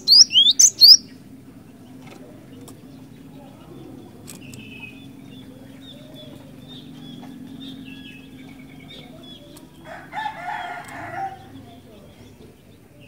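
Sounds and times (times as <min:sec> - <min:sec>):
bird calling high notes: 0:00.0 - 0:01.0.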